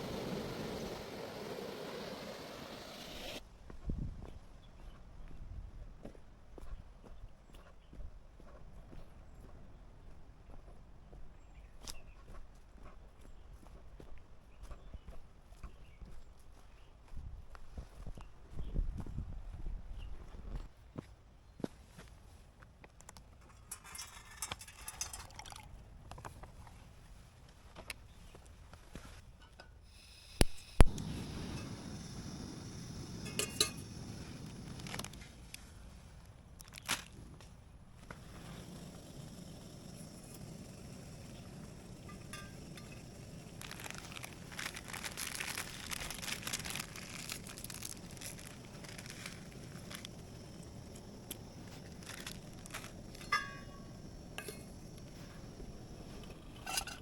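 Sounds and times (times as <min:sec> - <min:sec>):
packaging crinkling: 0:34.6 - 0:35.6, 0:36.6 - 0:37.2, 0:43.2 - 0:53.4.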